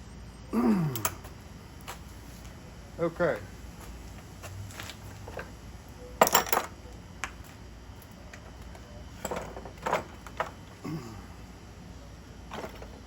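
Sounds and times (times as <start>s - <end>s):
metal tools clattering: 6.2s - 6.8s, 9.2s - 10.6s.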